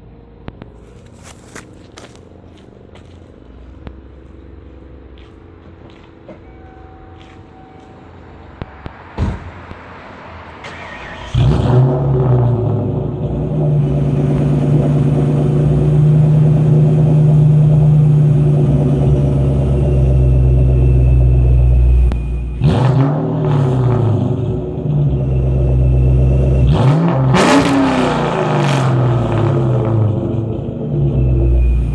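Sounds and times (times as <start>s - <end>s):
car engine revving: 8.6s - 31.9s.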